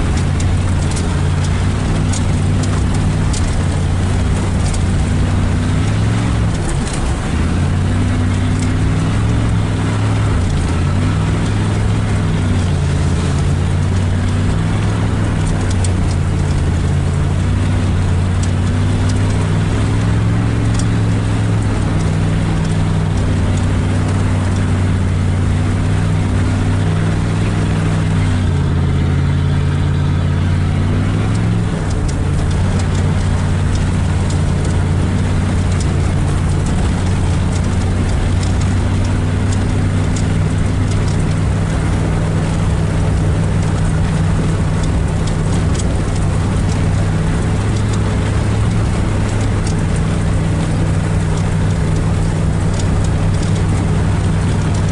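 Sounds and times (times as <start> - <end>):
hiss of tyres and water: 0.0 - 54.9
pickup truck engine running: 0.0 - 54.9
sharp ticks: 31.2 - 54.9.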